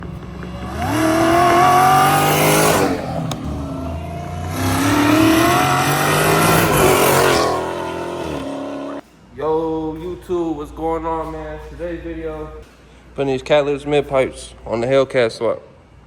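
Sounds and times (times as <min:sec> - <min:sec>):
car engine revving: 0:00.0 - 0:09.0.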